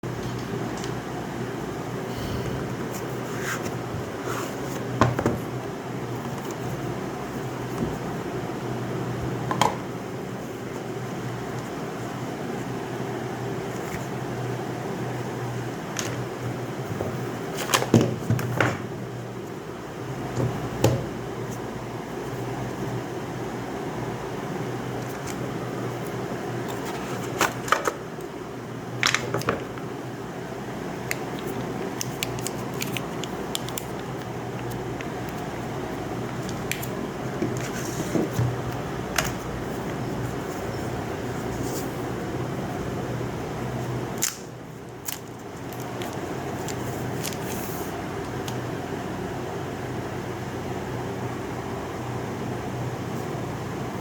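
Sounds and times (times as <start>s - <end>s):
steady fan hum: 0.0s - 54.0s
packaging clicks taps and rustles: 31.0s - 35.5s, 44.2s - 47.6s.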